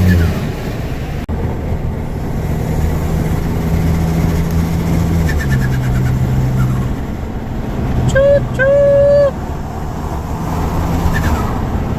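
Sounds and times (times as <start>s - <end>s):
turbocharged engine drone: 0.0s - 11.9s.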